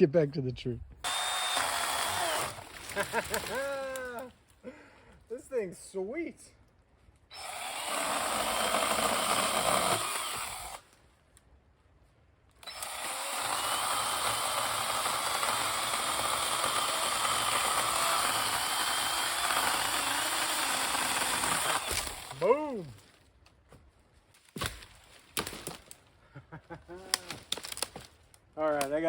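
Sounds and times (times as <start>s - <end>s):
battery saw cutting wood: 1.0s - 4.2s, 7.3s - 10.9s, 12.6s - 22.6s.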